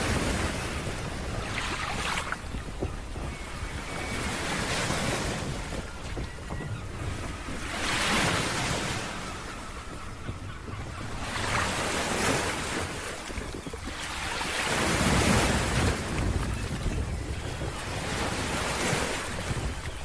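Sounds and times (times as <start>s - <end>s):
wind rumbling on microphone: 0.0s - 20.0s
surf breaking on a beach: 11.4s - 20.0s.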